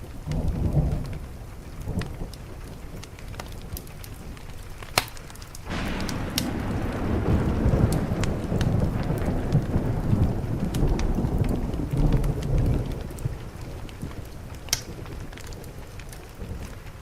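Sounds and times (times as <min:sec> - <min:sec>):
steady rain: 0:00.0 - 0:17.0
wood fire crackling: 0:00.0 - 0:17.0
thunder rumbling: 0:00.1 - 0:17.0.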